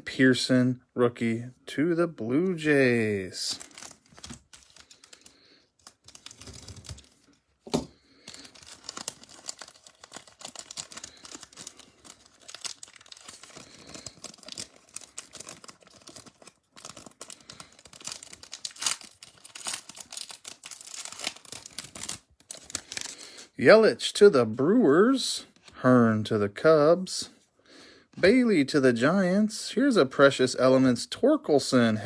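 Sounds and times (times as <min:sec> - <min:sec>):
plastic wrapper crinkling: 0:03.4 - 0:23.4.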